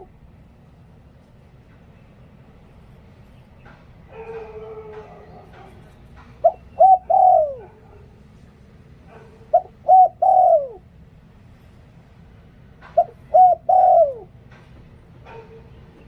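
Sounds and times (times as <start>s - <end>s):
dove cooing: 4.1s - 8.2s, 9.1s - 10.9s, 12.8s - 14.4s.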